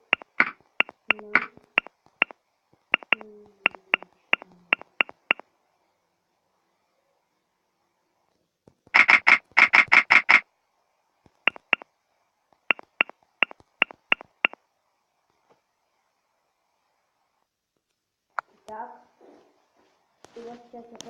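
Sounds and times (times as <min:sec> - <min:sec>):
phone keyboard clicking: 0:00.0 - 0:01.9, 0:03.0 - 0:04.1, 0:04.7 - 0:05.4, 0:09.0 - 0:10.4, 0:11.5 - 0:11.8, 0:12.7 - 0:14.6.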